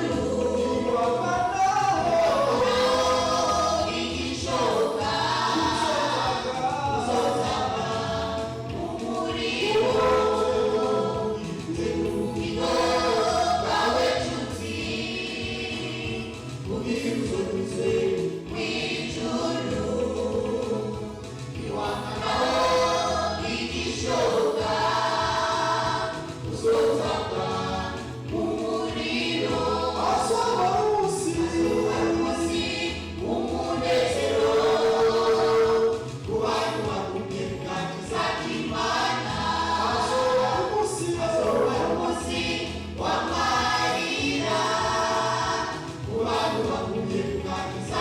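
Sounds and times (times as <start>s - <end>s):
choir singing a hymn: 0.0s - 48.0s.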